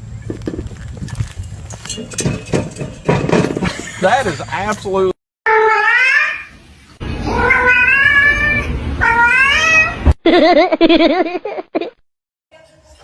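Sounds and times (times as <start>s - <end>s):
cat meowing: 5.5s - 6.5s, 7.2s - 10.0s
low wavering cat call: 5.5s - 6.5s, 7.2s - 10.0s.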